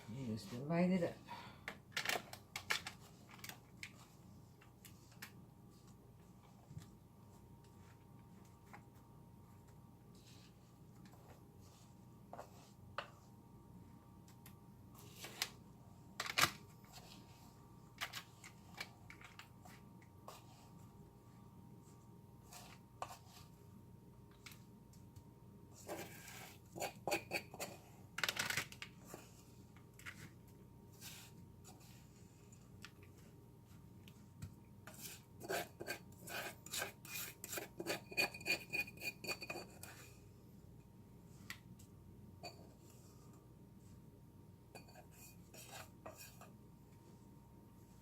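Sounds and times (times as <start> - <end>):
utensil scraping a bowl: 25.8 - 27.9, 34.9 - 40.1, 44.8 - 46.5.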